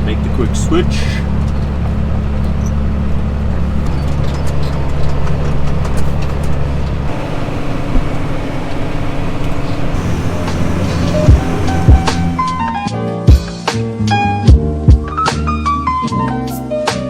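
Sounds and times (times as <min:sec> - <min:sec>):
machine running with deep hum: 0:00.0 - 0:12.9.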